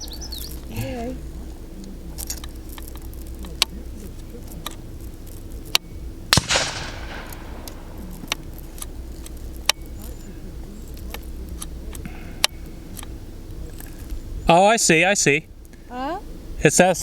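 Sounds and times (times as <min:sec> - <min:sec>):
faint distant rifle cracks: 0:04.6 - 0:13.2
rifle shot with echo: 0:06.3 - 0:09.0.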